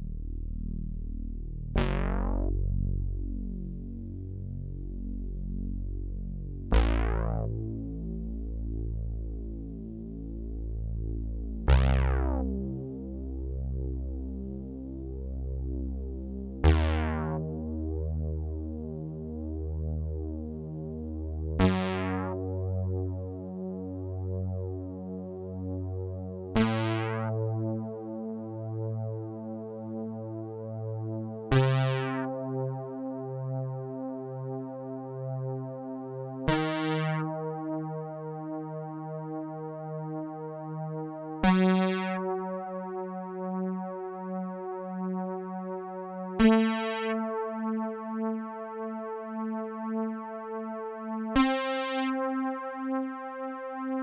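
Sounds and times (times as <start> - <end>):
synthesizer bass notes: 0.0 - 8.2.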